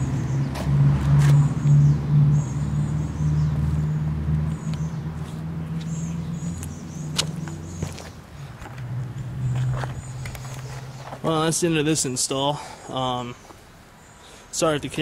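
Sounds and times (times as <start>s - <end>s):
car engine humming: 0.0s - 12.0s.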